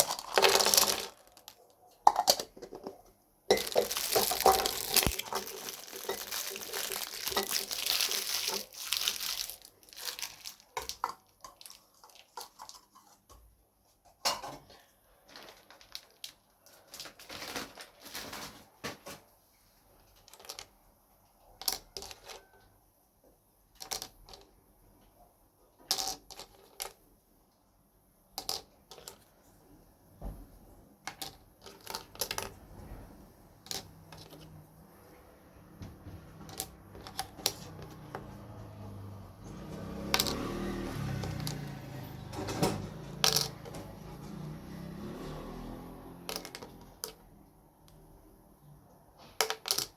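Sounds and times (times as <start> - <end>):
packaging rustling: 0.0 - 1.7, 3.5 - 11.0
plastic toys clicking and tapping: 0.0 - 13.5, 15.3 - 19.2, 20.0 - 22.7, 23.6 - 25.1, 25.7 - 27.1, 28.3 - 29.4, 31.0 - 32.7, 33.5 - 34.6, 35.8 - 48.1, 49.1 - 49.9.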